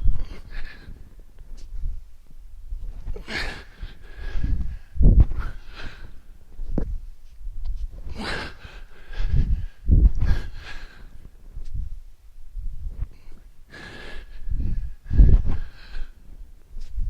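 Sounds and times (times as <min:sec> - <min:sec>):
person breathing heavily: 0:00.0 - 0:01.7, 0:03.0 - 0:06.8, 0:08.0 - 0:11.9, 0:12.8 - 0:16.9
low thuds: 0:03.8 - 0:05.6, 0:09.2 - 0:10.5, 0:11.5 - 0:13.3.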